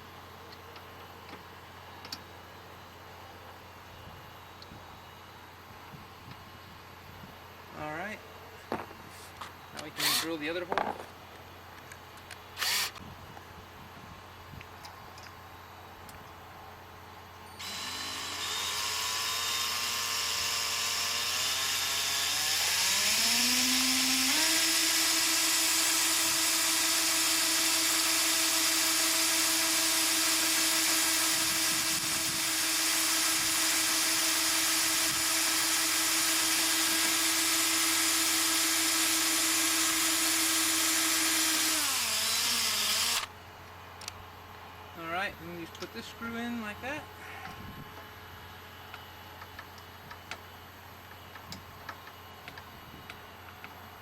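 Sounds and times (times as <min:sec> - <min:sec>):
electric drill whining: 0:10.0 - 0:10.4, 0:12.6 - 0:13.0, 0:17.5 - 0:43.3.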